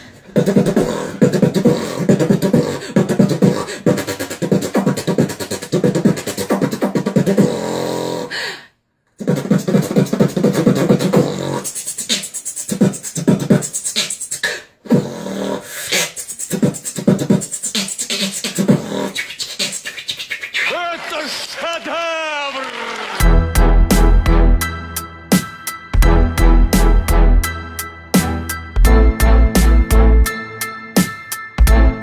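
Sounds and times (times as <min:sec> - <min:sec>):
beatboxing: 0:00.0 - 0:08.3, 0:09.2 - 0:24.7.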